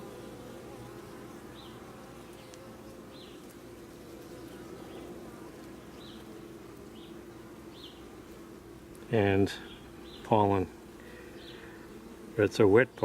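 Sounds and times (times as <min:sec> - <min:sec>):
bees buzzing: 0:00.0 - 0:13.0.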